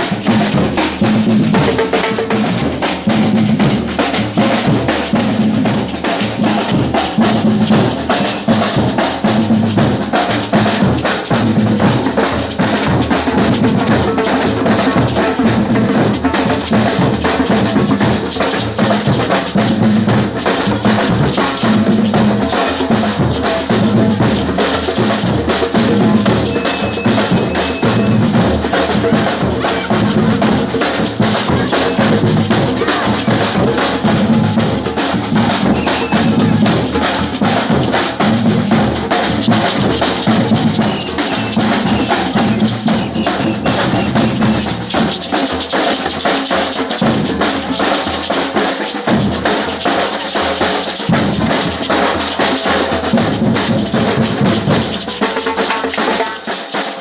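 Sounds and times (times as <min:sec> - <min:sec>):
deep bass drum beats: 0:00.0 - 0:45.5
snare and high drums: 0:00.0 - 0:57.0.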